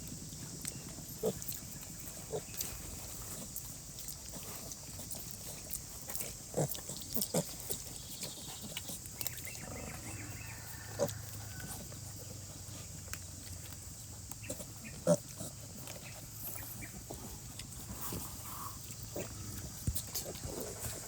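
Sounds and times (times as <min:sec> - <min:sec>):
pigs grunting: 0:00.6 - 0:12.9, 0:14.4 - 0:21.0
low drawn-out pig sound: 0:09.5 - 0:12.3, 0:14.5 - 0:21.0.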